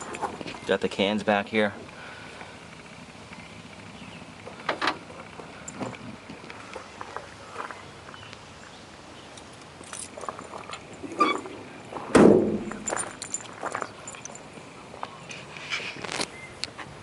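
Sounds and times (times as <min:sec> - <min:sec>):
light clicks and metallic clinks: 0:09.3 - 0:11.5, 0:12.6 - 0:15.4
loud sudden thump: 0:12.1 - 0:12.8.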